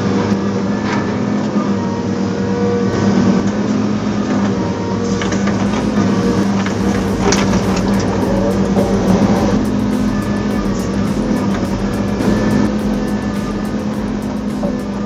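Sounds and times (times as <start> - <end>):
heavy machine engine running: 5.1 - 15.0.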